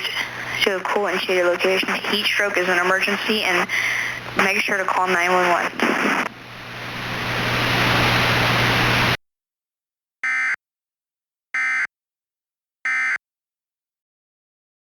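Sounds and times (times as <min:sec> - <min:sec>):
low hum: 0:00.0 - 0:09.2
static hiss: 0:00.0 - 0:09.2
buzzy data bursts: 0:04.4 - 0:09.2.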